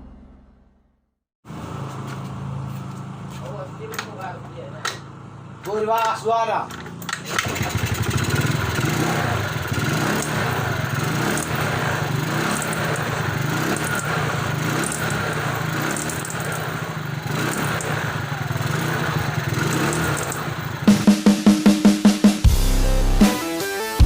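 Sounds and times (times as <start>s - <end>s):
scooter engine running: 6.9s - 21.2s
music with drum beat: 20.9s - 24.0s.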